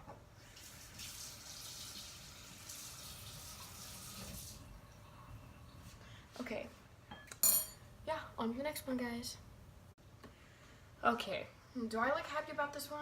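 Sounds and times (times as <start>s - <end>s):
water running from a tap: 0.4s - 4.7s.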